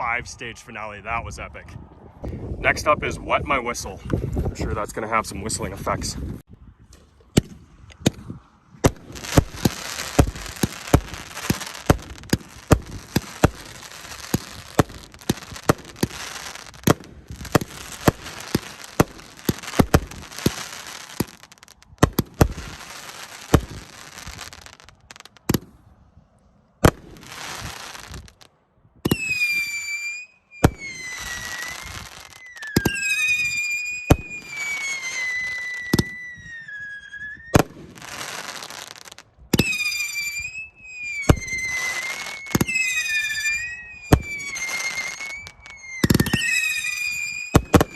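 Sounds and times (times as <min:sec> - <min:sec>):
firework shots and bursts: 0:07.2 - 0:25.8, 0:26.8 - 0:47.9
crackling hiss: 0:08.8 - 0:25.6, 0:26.8 - 0:28.5, 0:29.1 - 0:47.9
shrill descending whistles: 0:29.1 - 0:37.6, 0:39.6 - 0:47.9.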